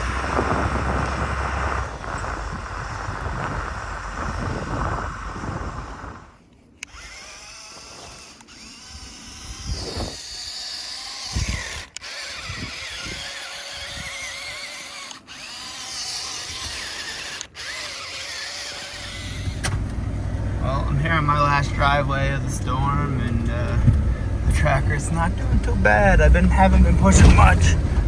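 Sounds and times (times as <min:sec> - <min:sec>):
whining motor: 0:00.0 - 0:28.0
low thuds: 0:19.1 - 0:28.0.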